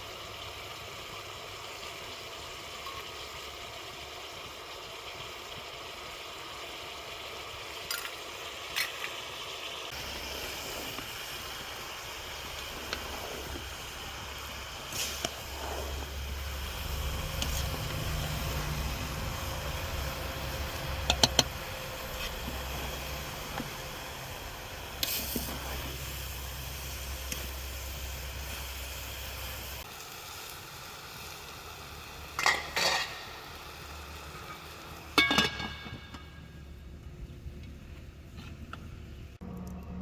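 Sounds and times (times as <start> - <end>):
food sizzling in a pot: 0.0 - 36.8
low rumble: 9.9 - 29.8
metal utensil clinking on pot: 32.4 - 33.4, 35.2 - 36.4.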